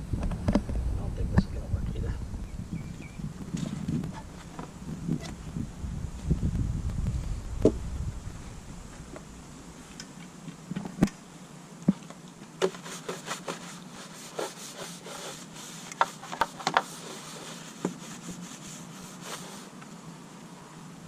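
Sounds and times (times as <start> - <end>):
brush scrubbing a hull: 12.6 - 19.8.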